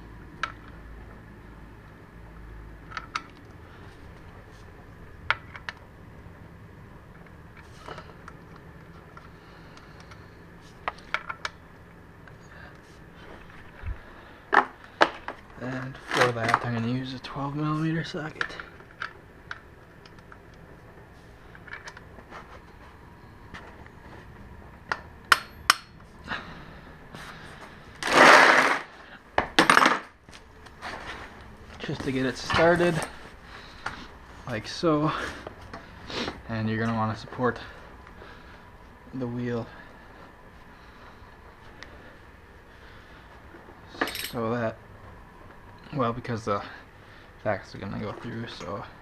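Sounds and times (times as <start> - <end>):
faint steady hum: 0.0 - 49.0
metal tools clinking: 32.4 - 33.3, 44.0 - 44.4.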